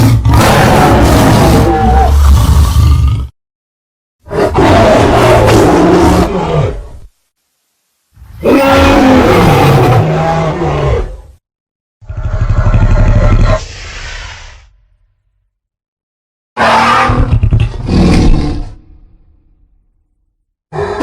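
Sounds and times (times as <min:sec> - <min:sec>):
deep dinosaur roars: 0:00.0 - 0:03.3, 0:12.0 - 0:13.8.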